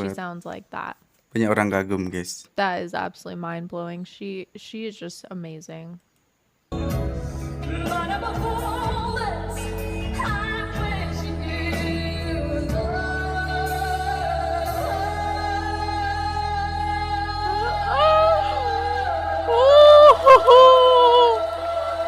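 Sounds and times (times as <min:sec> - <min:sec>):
woman singing a slow ballad: 0:07.6 - 0:22.0.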